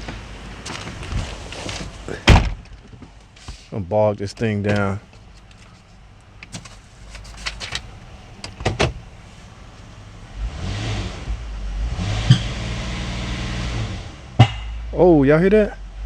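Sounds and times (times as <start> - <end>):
engine droning under load: 0.0 - 2.8, 3.7 - 16.0
sharp clicks and clunks: 4.6 - 9.0.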